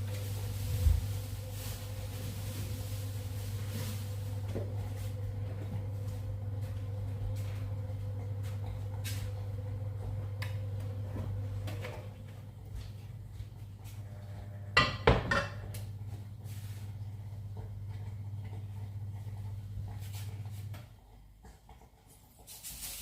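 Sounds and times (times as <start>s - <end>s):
steady low hum: 0.0s - 21.2s
kitchenware clattering: 14.8s - 15.8s.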